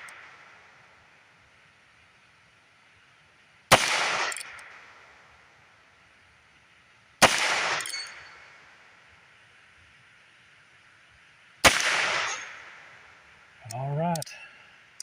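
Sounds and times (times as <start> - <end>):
revolver shots with ringing echo: 3.7 - 4.9, 7.2 - 8.4, 11.6 - 12.8.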